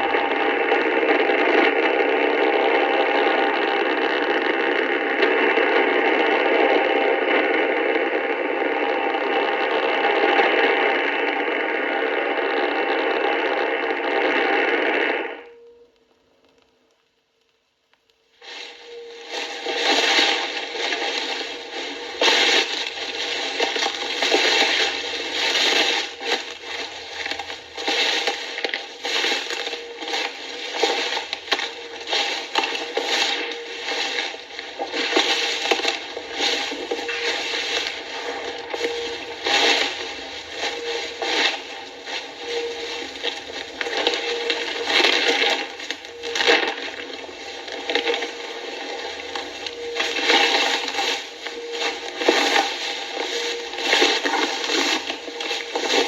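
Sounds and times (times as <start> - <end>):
radio static hiss: 0.0 - 15.8, 18.4 - 56.0
faint whistling tones: 18.5 - 56.0.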